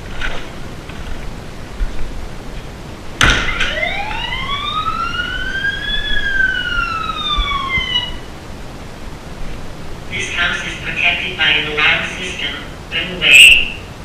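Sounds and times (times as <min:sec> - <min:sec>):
steady hiss: 0:00.0 - 0:04.1, 0:04.9 - 0:14.0
siren wail rising and falling: 0:03.4 - 0:08.4.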